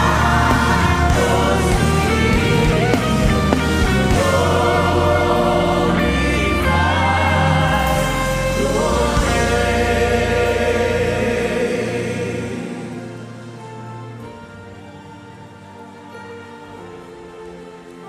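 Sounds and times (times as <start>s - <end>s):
steady bass: 0.0s - 14.2s
voices singing together: 0.0s - 16.8s.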